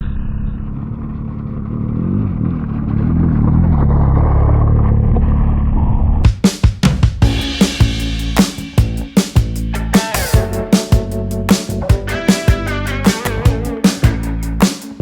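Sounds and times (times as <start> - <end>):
motorcycle engine revving: 0.5 - 6.2
drum hits of music: 6.3 - 15.0.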